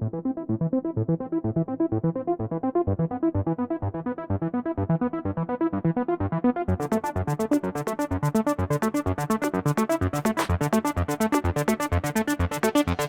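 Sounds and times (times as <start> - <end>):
synthesizer arpeggio: 3.9 - 13.0.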